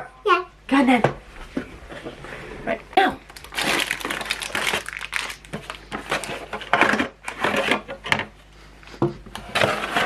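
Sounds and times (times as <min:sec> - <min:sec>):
cardboard tearing and rustling: 0:03.5 - 0:06.7.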